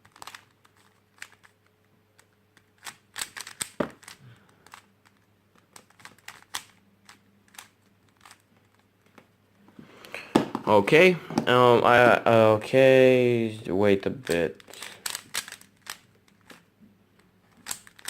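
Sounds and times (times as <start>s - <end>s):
puzzle cube layers clicking: 0.0s - 8.9s, 14.2s - 18.0s.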